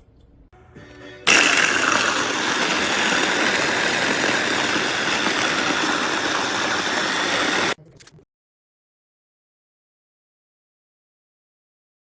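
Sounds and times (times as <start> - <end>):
immersion blender motor running: 1.3 - 7.8.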